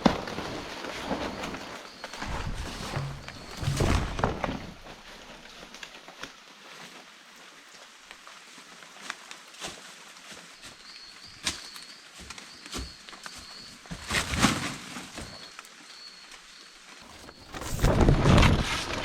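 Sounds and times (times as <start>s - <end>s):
rustling and clicks: 2.0s - 5.9s.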